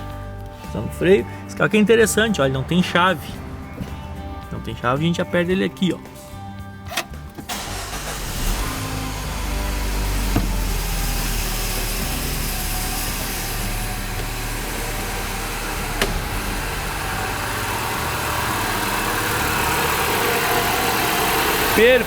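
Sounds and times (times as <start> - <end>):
car engine idling: 6.1 - 22.0.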